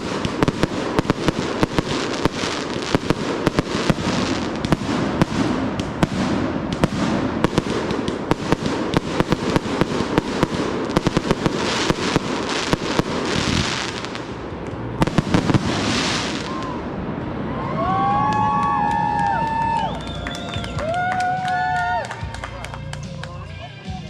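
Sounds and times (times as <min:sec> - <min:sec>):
hissing firework crackle: 0:00.0 - 0:17.1
fireworks cracking and banging: 0:00.0 - 0:22.0.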